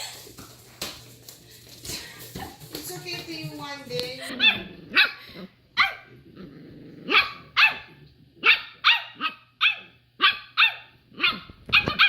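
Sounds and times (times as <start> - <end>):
dog barking: 4.3 - 5.2, 5.8 - 6.1, 7.1 - 12.0
dog growling: 4.5 - 5.5, 6.1 - 8.4.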